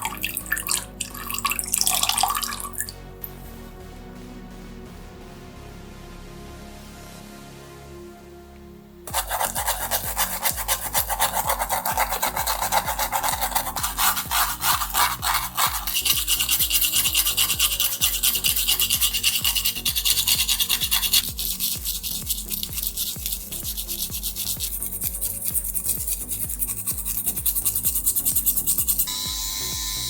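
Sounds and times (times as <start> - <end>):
abrasive rubbing on metal: 9.1 - 29.1.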